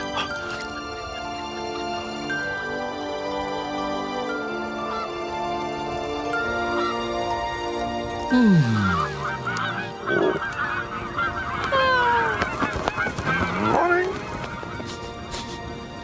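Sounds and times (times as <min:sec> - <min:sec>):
geese honking and cackling: 0:04.1 - 0:07.3, 0:08.4 - 0:15.2.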